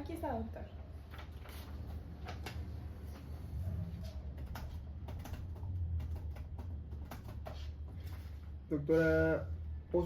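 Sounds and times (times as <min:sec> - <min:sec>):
typing on computer keyboard: 0:04.2 - 0:08.1.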